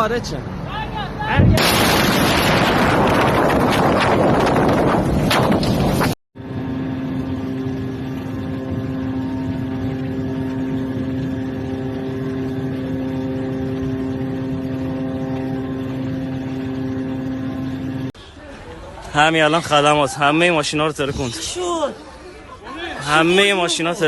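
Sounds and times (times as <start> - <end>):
engine-like drone: 1.7 - 18.2.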